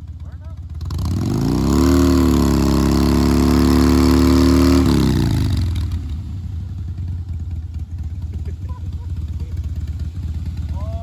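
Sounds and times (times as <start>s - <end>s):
vehicle engine revving: 0.0s - 7.2s.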